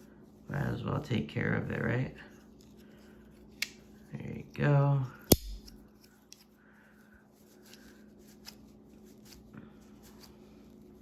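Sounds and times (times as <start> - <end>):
sharp metallic click of multitool: 5.3 - 5.8.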